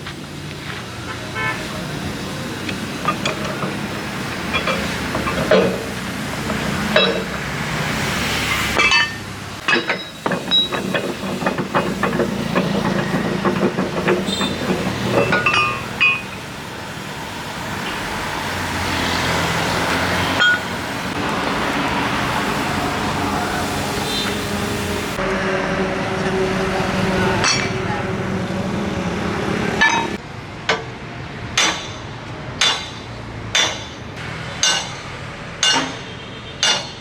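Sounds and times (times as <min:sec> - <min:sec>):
steady engine drone: 0:00.0 - 0:37.0
metallic clanks and knocks: 0:02.3 - 0:16.7, 0:20.2 - 0:20.8, 0:27.4 - 0:27.9, 0:29.8 - 0:30.9, 0:31.6 - 0:37.0.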